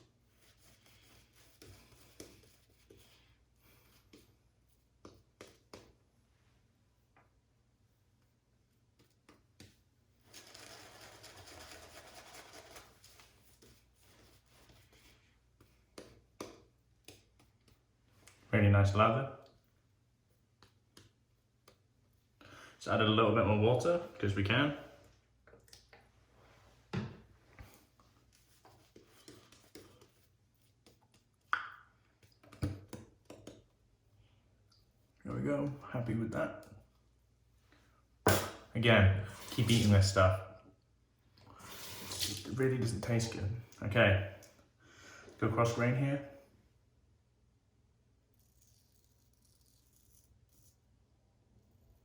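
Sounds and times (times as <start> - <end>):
shaving brush squishing lather: 48.4 - 50.8.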